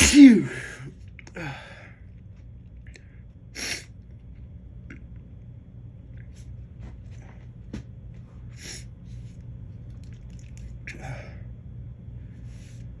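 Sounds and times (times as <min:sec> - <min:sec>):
man sniffing and breathing: 0:03.6 - 0:03.9, 0:08.5 - 0:09.3.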